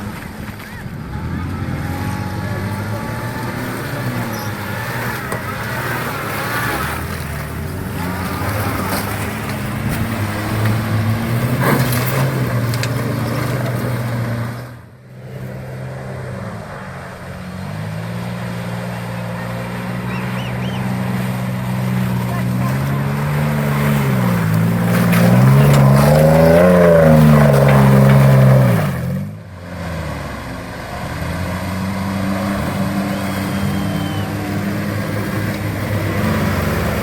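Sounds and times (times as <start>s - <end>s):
vehicle engine pulling under load: 0.0s - 37.0s.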